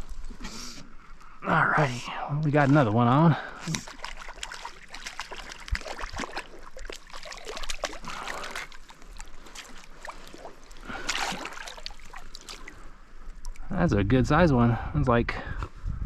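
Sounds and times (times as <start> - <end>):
water splashing from thrashing fish: 2.6 - 13.0.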